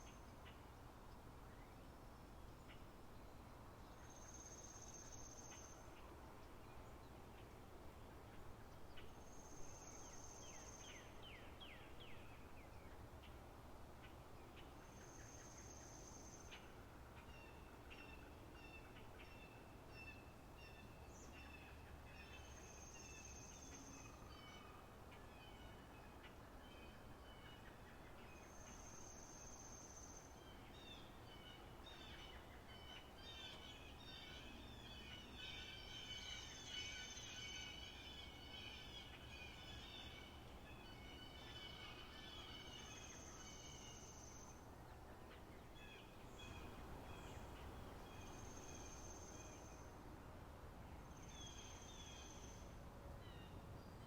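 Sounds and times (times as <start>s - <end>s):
birdsong chirps and trills: 14.0s - 49.9s.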